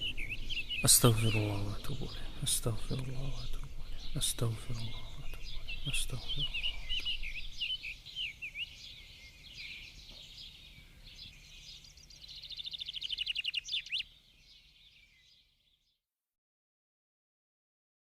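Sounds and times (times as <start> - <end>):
rapid bird trill: 0.0 - 15.6
birds chirping and twittering: 0.0 - 16.0.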